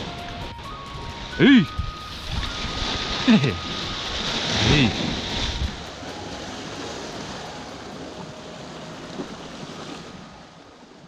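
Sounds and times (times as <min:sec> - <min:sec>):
wind noise on microphone: 0:00.0 - 0:06.0
surf washing against rocks: 0:00.0 - 0:11.0.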